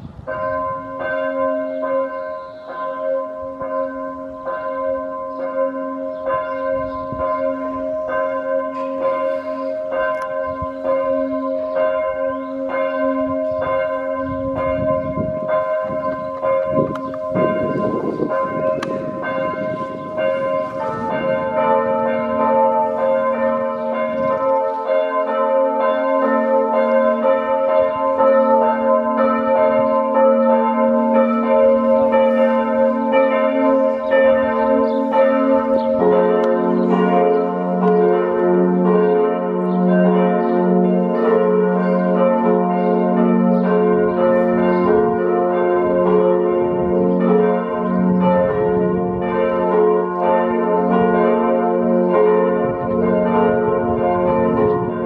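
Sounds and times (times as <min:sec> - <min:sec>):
church bells pealing: 0:00.0 - 0:55.0
deeper bell ringing: 0:00.3 - 0:55.0.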